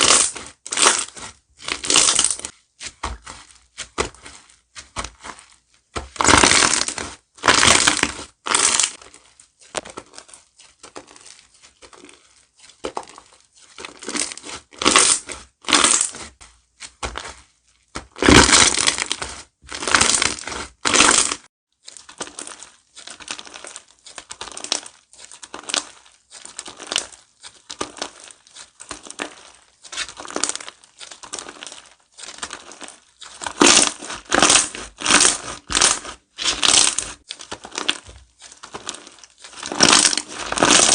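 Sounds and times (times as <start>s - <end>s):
slime squishing by hand: 0.0s - 40.9s.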